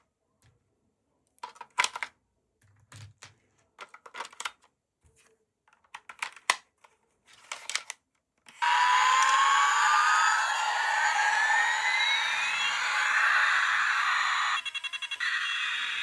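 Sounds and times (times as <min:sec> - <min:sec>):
electronic toy sound effect: 0:08.6 - 0:16.0.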